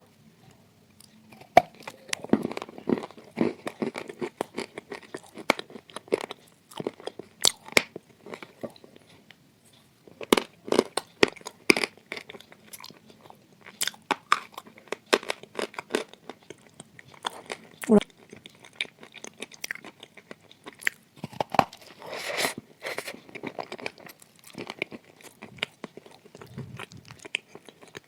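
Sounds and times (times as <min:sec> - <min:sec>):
crumbly munching: 0:00.9 - 0:28.0
biting crunchy clay: 0:20.8 - 0:22.0.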